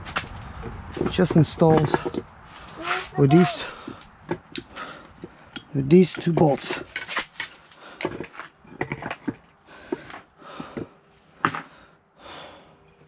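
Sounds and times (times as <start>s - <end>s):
hand tools clicking and knocking: 1.0s - 2.3s, 3.8s - 11.8s.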